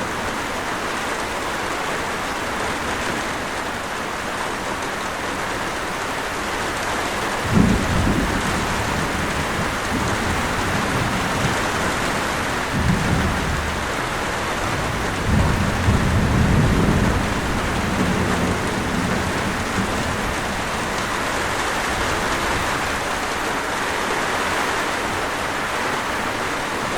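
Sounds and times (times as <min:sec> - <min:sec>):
heavy rain: 0:00.0 - 0:26.9
thunder cracking and rumbling: 0:07.4 - 0:23.1.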